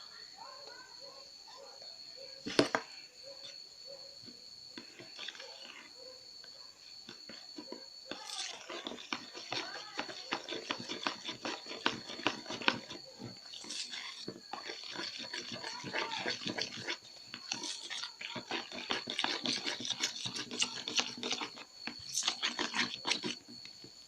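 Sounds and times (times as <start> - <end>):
wet squelching glue: 7.3 - 23.5.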